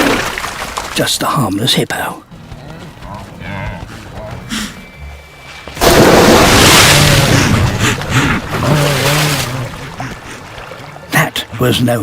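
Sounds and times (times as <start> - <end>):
thrashing water: 0.0 - 1.4, 5.5 - 11.6
low animal calls: 2.3 - 5.7
loud water splash: 5.8 - 10.1.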